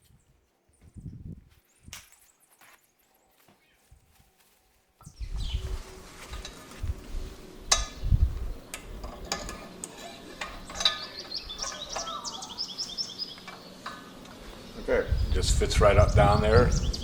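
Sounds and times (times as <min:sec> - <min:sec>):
bird chirping: 0:05.0 - 0:05.8, 0:07.1 - 0:17.0
propeller knocking and clicking: 0:07.7 - 0:14.7.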